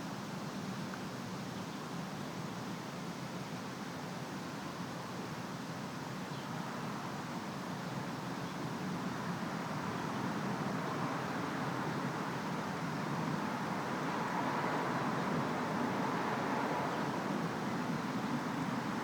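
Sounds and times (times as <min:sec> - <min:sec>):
road traffic noise: 0:08.7 - 0:19.0.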